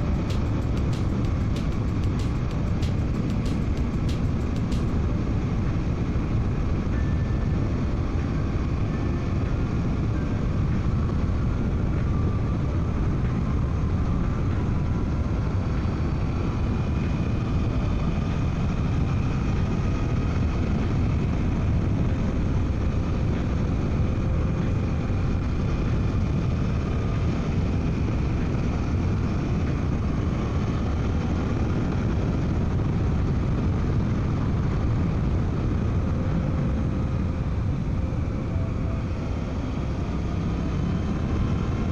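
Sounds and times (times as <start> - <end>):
motorcycle engine running: 0.0 - 5.0
wind and road rush: 0.0 - 41.9.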